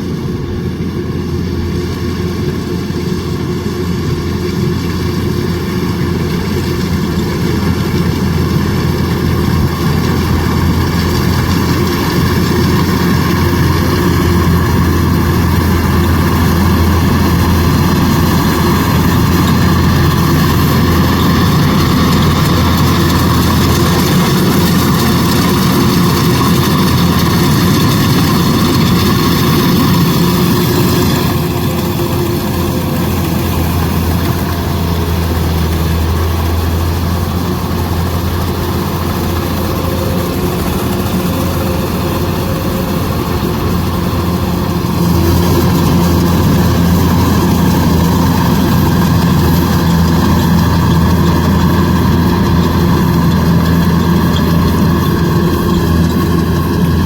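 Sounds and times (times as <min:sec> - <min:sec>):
combine harvester running: 0:00.0 - 0:57.0.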